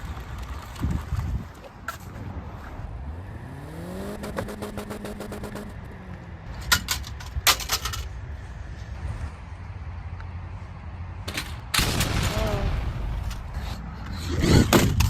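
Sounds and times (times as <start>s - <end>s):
car engine revving: 2.6s - 6.7s.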